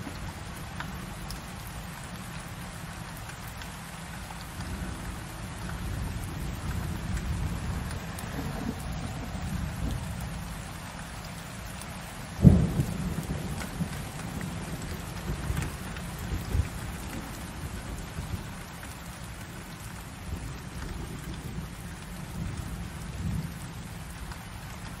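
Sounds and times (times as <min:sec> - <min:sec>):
light rain falling: 0:00.0 - 0:25.0
low rumbles of thunder: 0:04.5 - 0:11.2, 0:12.3 - 0:18.6, 0:20.2 - 0:24.8
thunderclap: 0:06.0 - 0:10.0, 0:12.4 - 0:15.8.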